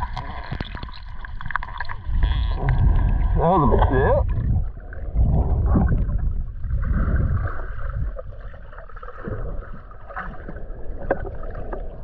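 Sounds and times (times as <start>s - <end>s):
water sloshing and gurgling: 0.0s - 12.0s
wind rumbling on microphone: 1.9s - 8.5s.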